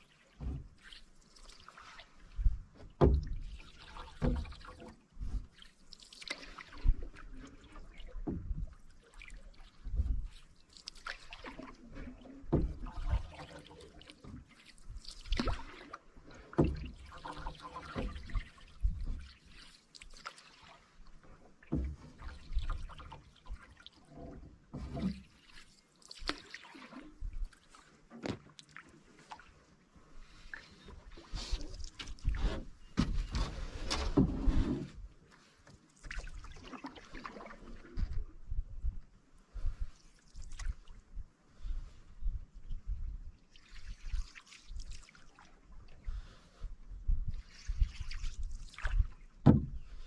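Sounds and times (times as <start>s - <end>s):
paddle strokes splashing: 0.0s - 38.3s, 43.4s - 46.6s, 47.4s - 50.0s
knocks against hull: 0.4s - 0.8s, 2.8s - 3.5s, 4.2s - 4.7s, 12.5s - 13.2s, 32.4s - 34.6s, 49.4s - 49.9s.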